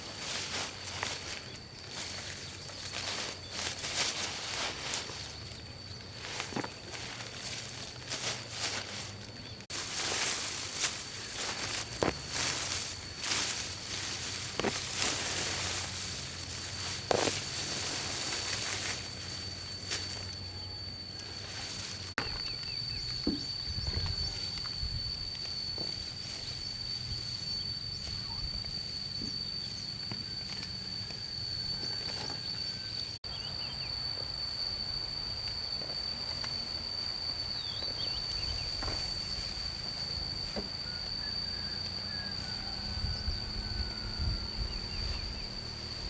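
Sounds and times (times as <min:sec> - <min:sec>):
low rumble of wind: 0:00.0 - 0:30.4, 0:34.0 - 0:46.0
insect high steady drone: 0:00.0 - 0:46.0
faint bird chirps: 0:26.2 - 0:34.0.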